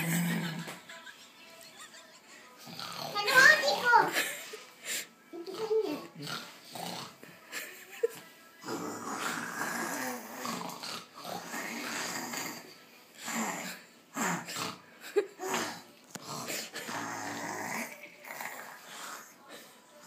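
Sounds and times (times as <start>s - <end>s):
child imitating snoring: 0.0s - 0.8s, 2.6s - 4.2s, 5.4s - 7.2s, 8.6s - 14.8s, 15.4s - 19.4s.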